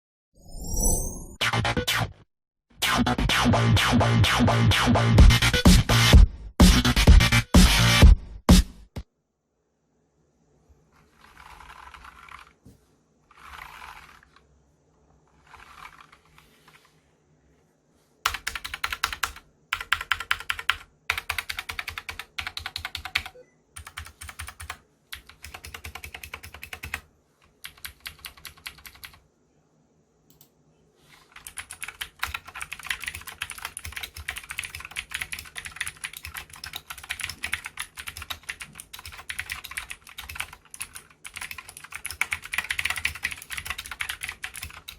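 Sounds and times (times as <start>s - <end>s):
mechanical keyboard typing: 11.1s - 12.6s, 13.3s - 14.4s, 15.4s - 16.8s, 18.3s - 27.0s, 27.6s - 29.2s, 31.3s - 44.9s.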